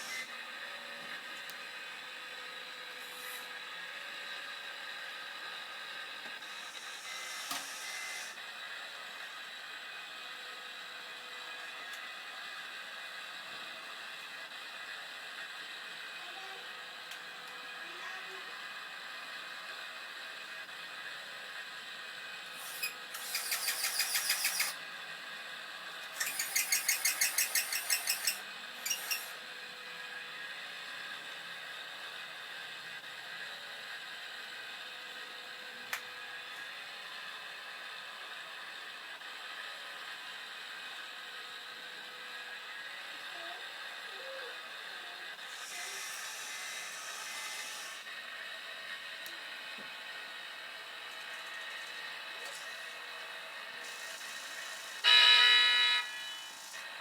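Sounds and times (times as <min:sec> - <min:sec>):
toy sound module hissing: 0:22.6 - 0:24.8, 0:26.1 - 0:29.4, 0:45.5 - 0:48.0.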